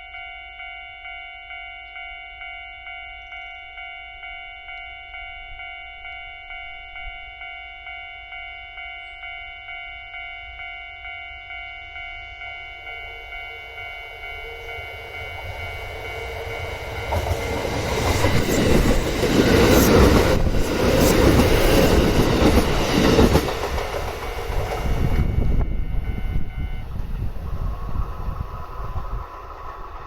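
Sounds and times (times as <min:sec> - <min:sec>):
level crossing bell ringing: 0:00.0 - 0:19.9
approaching train rush: 0:05.2 - 0:30.0.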